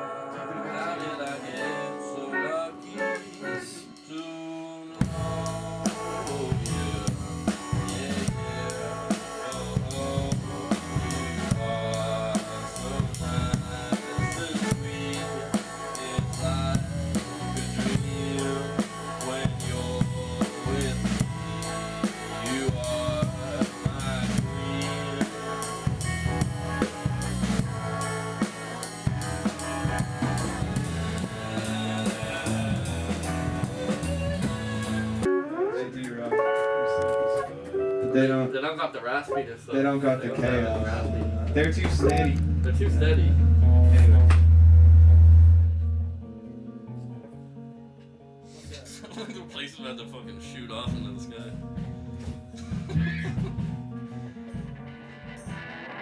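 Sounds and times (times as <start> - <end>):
rock song with full band: 5.0 - 35.4, 52.8 - 56.0.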